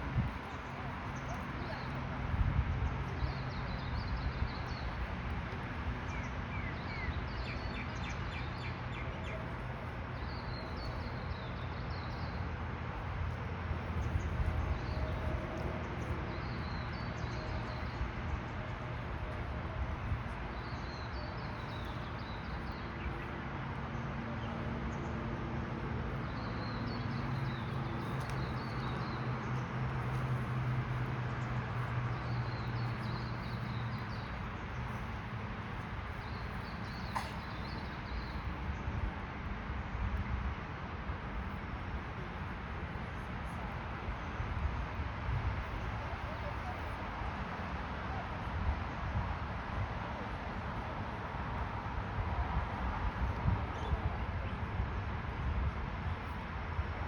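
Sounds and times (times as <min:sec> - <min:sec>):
birds chirping: 0:26.2 - 0:38.5.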